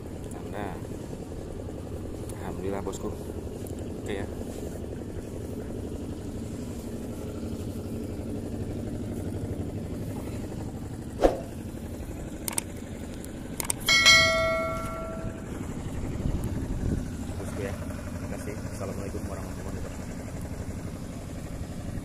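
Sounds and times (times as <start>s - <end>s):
low engine hum: 0.0s - 22.0s
sharp knock: 11.2s - 11.5s
metal object ringing: 13.8s - 15.7s.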